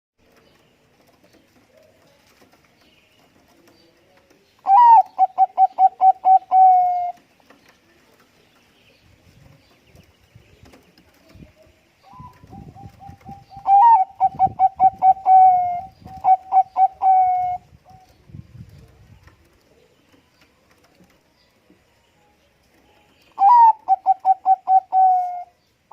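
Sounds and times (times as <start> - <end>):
dove cooing: 4.6 - 7.2, 12.0 - 18.1, 23.4 - 25.6.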